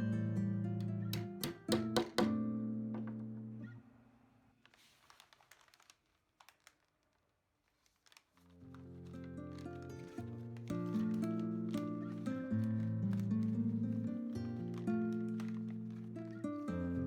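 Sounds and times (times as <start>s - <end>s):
plucked acoustic guitar music: 0.0s - 3.8s, 8.9s - 17.0s.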